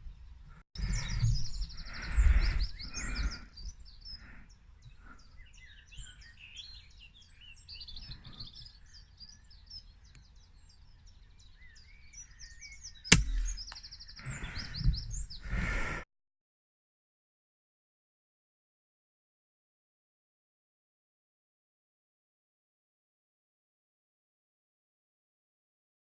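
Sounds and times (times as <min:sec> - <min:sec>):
birds chirping: 0:00.0 - 0:16.0
air rifle shot: 0:13.1 - 0:13.7.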